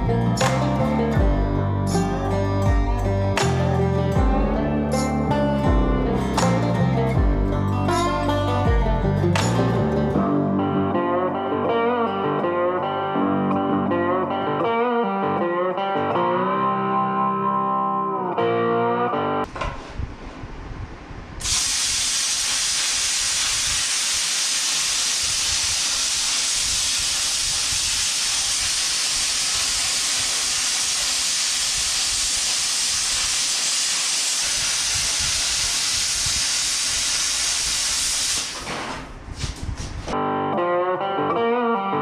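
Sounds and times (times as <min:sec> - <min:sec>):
plasma cutter hissing: 0:21.4 - 0:39.1.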